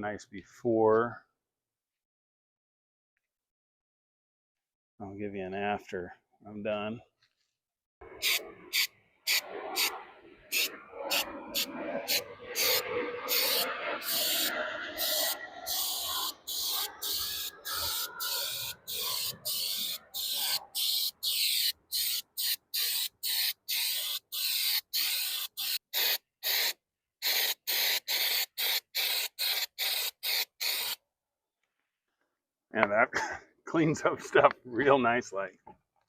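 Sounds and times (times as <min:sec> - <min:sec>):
aerosol spray can hissing: 0:08.2 - 0:09.9, 0:10.5 - 0:31.0.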